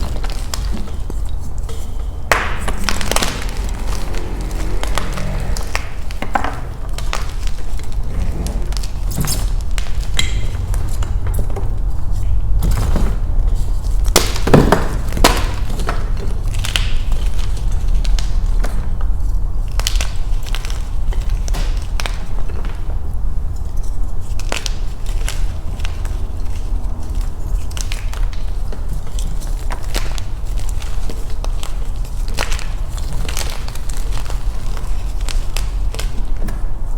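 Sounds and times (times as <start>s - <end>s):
low rumble: 0.0s - 14.5s.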